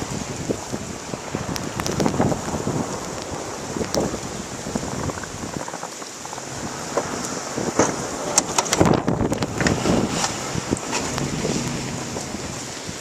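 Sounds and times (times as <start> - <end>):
steady noisy rush of plowing: 0.0 - 13.0
wind buffeting microphone: 0.0 - 13.0.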